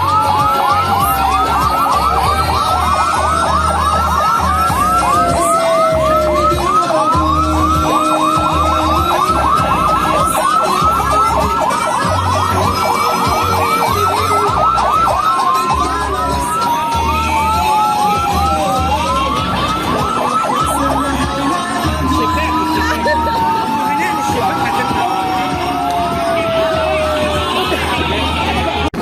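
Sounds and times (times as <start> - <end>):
slower falling siren tones: 0.0 - 27.6
electronic siren yelp: 0.0 - 29.0.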